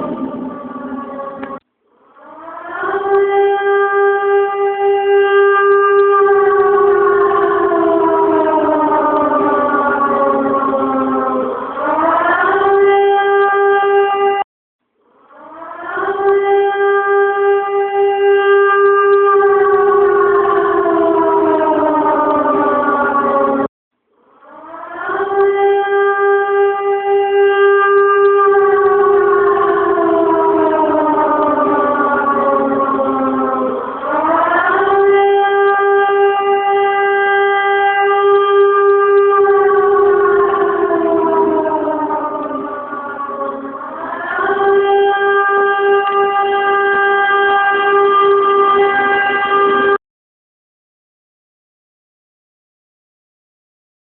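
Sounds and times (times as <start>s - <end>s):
air-raid siren wailing: 0.0s - 14.5s, 15.3s - 23.7s, 24.4s - 50.0s.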